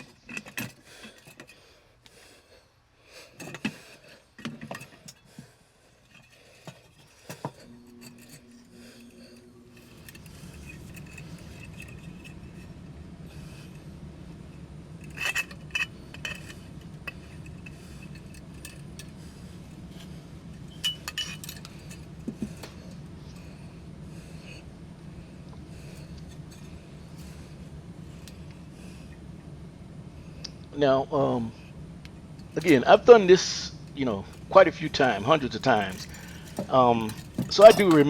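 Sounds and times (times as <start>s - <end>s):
metal parts clinking and scraping: 0.0s - 1.6s, 3.4s - 5.4s, 6.0s - 13.8s, 15.0s - 23.4s, 25.8s - 27.5s, 32.4s - 33.3s, 34.0s - 38.0s.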